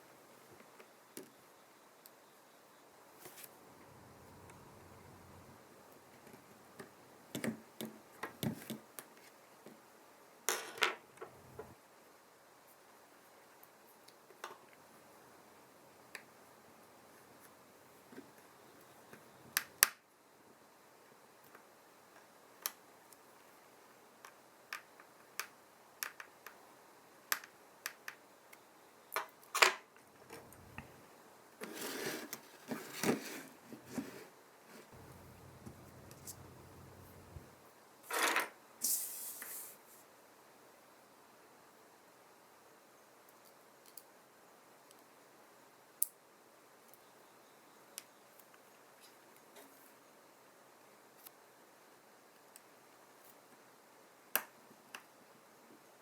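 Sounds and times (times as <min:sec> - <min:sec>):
short rustling scrape: 0:31.6 - 0:37.5
scraping clicks: 0:35.0 - 0:37.5.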